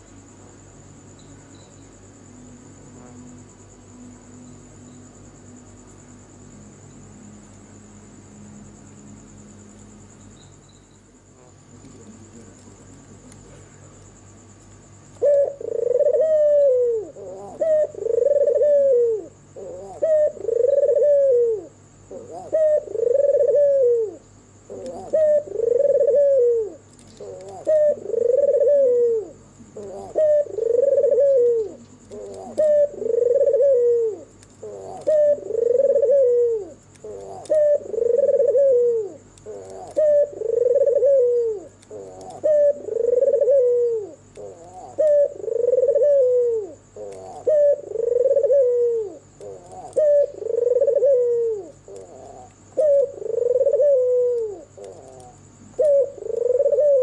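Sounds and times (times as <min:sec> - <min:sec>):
dove cooing: 0:15.2 - 0:57.0.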